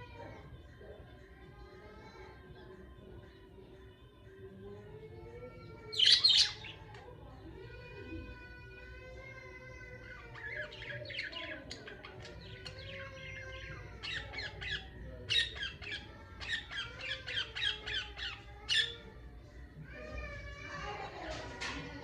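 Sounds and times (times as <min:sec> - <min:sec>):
budgerigars chirping and squawking: 0:05.9 - 0:07.0, 0:10.0 - 0:19.1.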